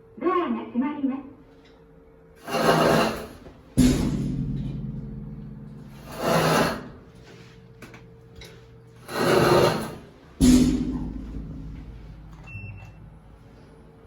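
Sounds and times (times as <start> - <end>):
elevator scraping rushing noise: 2.4 - 3.5, 5.9 - 7.6, 9.0 - 10.2
elevator low hum: 3.2 - 14.0
heavy thump: 3.8 - 6.8, 10.4 - 12.4.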